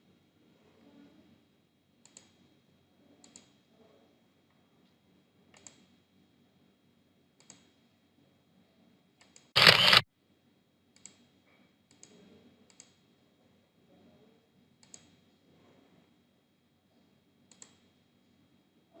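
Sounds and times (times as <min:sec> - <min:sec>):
faint computer mouse clicks: 0:02.0 - 0:02.3, 0:05.5 - 0:05.8, 0:09.2 - 0:10.0, 0:11.0 - 0:11.2, 0:14.8 - 0:15.1, 0:17.5 - 0:17.8.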